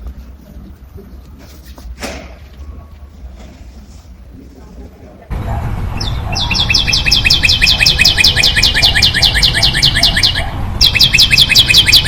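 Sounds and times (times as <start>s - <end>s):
bird chirping: 5.9s - 12.0s.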